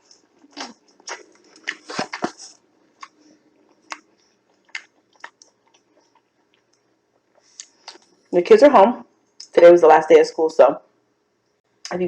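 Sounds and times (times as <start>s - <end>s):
chewing with wet mouth clicks: 3.0s - 8.1s.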